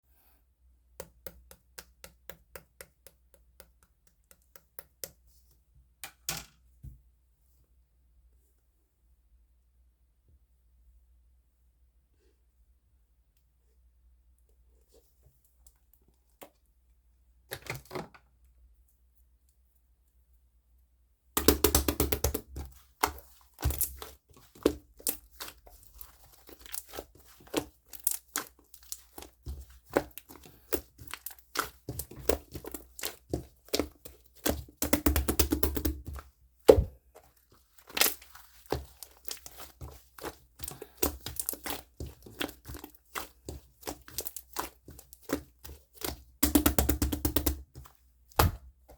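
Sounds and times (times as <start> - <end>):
slime squished with wet pops: 21.4 - 47.7.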